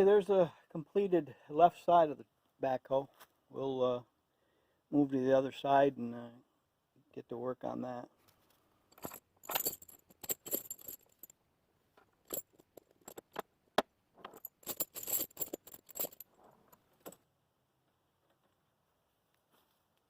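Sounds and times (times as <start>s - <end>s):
tire chains clinking: 8.9s - 11.3s, 12.2s - 13.4s, 14.3s - 17.2s.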